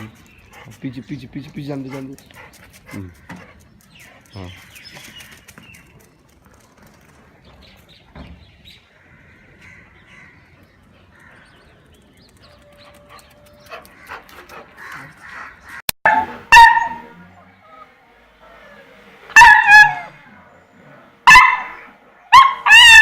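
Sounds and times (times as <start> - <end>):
dog barking: 16.1 - 17.2, 19.3 - 20.2, 21.2 - 23.0.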